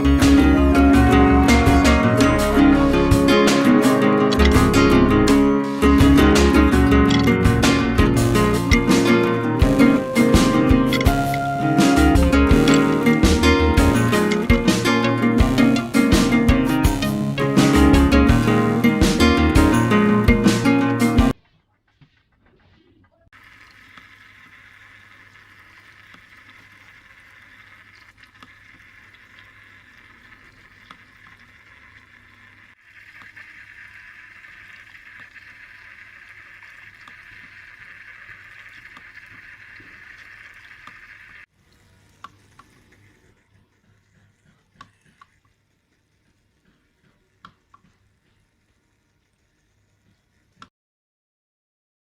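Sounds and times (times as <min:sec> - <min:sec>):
water fountain splashing: 0:00.0 - 0:17.5, 0:23.4 - 0:50.6
water trickling and dripping: 0:23.4 - 0:50.7.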